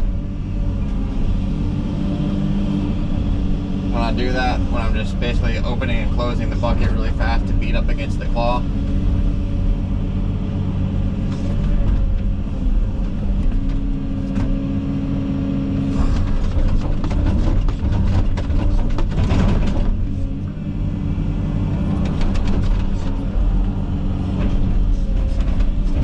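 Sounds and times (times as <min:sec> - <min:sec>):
excavator diesel engine running: 0:00.0 - 0:26.0.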